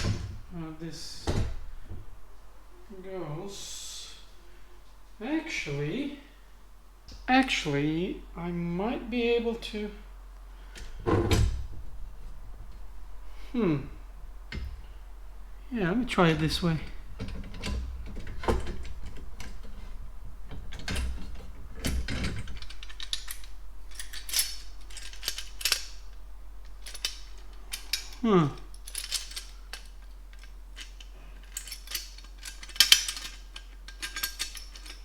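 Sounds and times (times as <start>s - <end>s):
metal brackets clicking and clattering: 16.0s - 35.0s.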